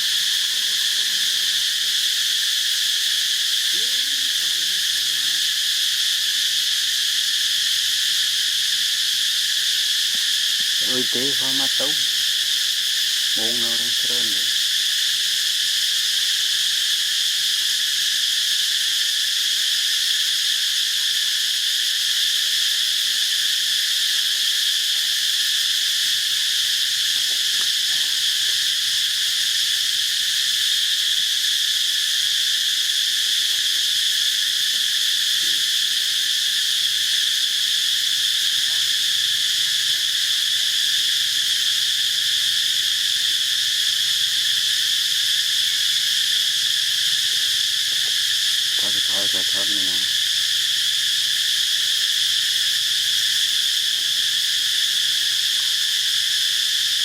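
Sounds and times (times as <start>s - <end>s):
insect chorus shrilling: 0.0s - 57.0s.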